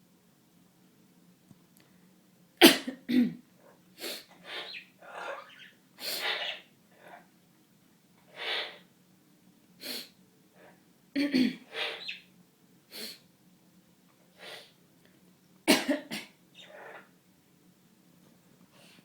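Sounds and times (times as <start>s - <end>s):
parrot sniffling and snorting: 4.0s - 7.2s, 8.3s - 8.9s, 11.6s - 12.2s
person sniffling and snorting: 9.8s - 10.1s.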